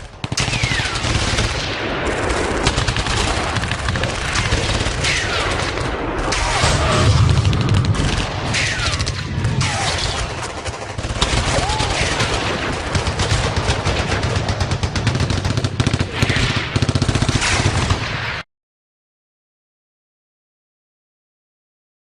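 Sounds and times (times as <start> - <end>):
machine-gun and rifle fire: 0.0 - 18.4
low rumble: 5.8 - 10.7.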